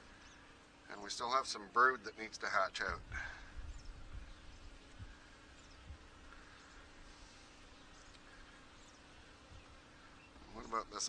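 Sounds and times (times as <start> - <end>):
bees buzzing: 0.0 - 11.0.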